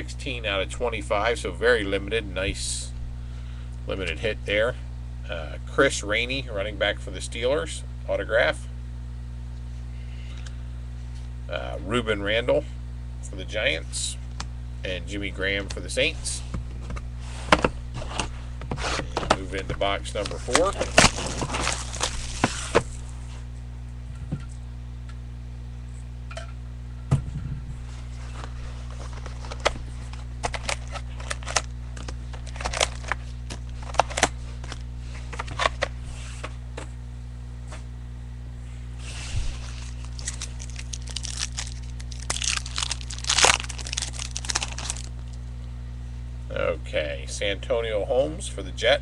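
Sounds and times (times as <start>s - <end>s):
steady low hum: 0.0s - 49.0s
wrapping crinkling and tearing: 20.2s - 23.0s, 28.8s - 34.8s, 39.5s - 45.4s.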